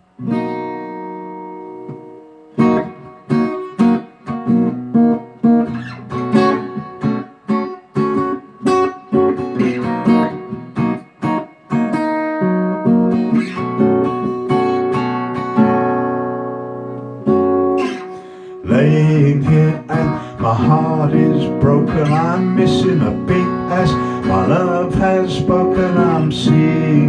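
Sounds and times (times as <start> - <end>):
acoustic guitar strumming: 0.0 - 27.0
guitar chord ringing: 6.2 - 27.0.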